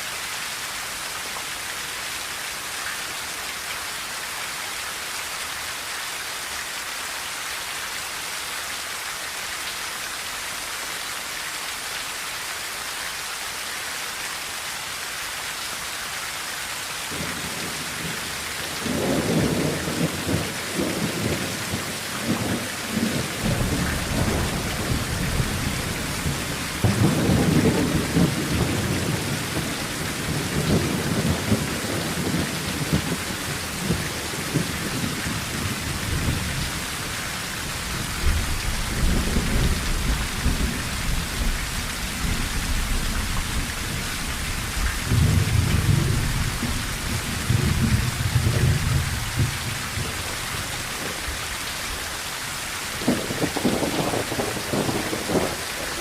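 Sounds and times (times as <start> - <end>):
rain on a tin roof: 0.0 - 56.0
thunder rumbling: 17.1 - 36.9, 38.0 - 51.4, 53.0 - 56.0.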